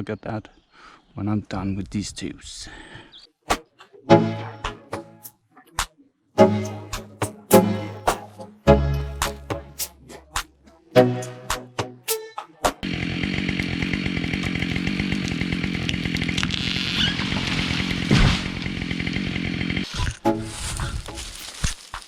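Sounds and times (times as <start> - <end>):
music: 4.1 - 5.3, 6.4 - 12.8, 20.2 - 21.5
chainsaw cutting wood: 12.8 - 22.0.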